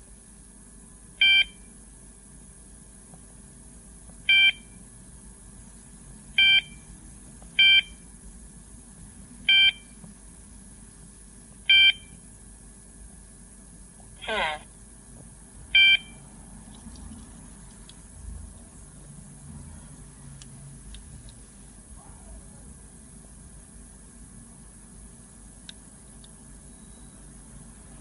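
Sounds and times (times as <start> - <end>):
short electronic alarm beeps: 15.8 - 16.2.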